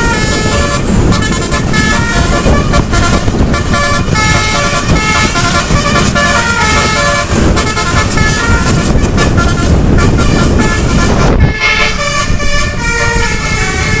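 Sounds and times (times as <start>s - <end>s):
bus horn playing multi-note tune: 0.0s - 14.0s
engine and road rumble: 0.0s - 14.0s.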